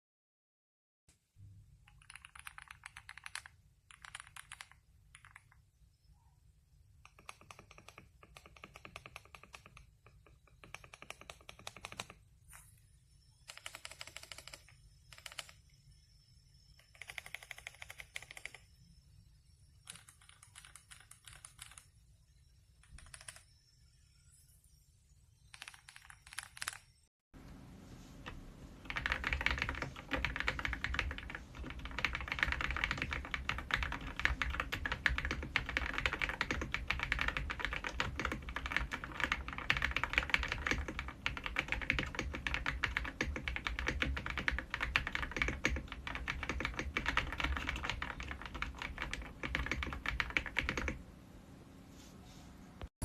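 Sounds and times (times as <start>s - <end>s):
mechanical keyboard typing: 1.9s - 5.6s, 7.0s - 12.2s, 13.5s - 15.6s, 16.8s - 18.6s, 19.9s - 21.9s, 22.8s - 23.5s, 25.5s - 26.9s, 28.8s - 51.0s.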